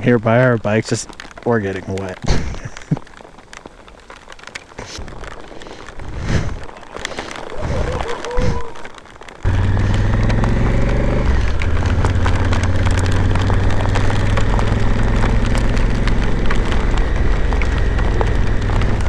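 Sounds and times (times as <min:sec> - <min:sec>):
rain spattering camera: 0:00.0 - 0:19.0
motorcycle engine running: 0:09.5 - 0:19.0.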